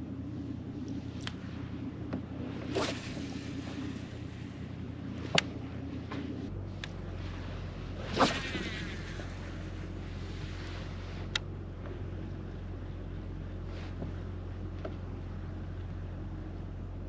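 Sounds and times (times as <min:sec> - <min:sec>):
fishing reel line whirring: 0:00.0 - 0:11.6
low hum: 0:00.0 - 0:17.0
fishing rod swish: 0:00.9 - 0:11.4.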